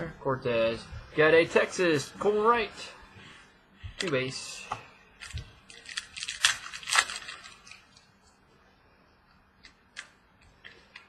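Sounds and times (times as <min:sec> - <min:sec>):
trading cards rustling and clicking: 0:05.2 - 0:08.1.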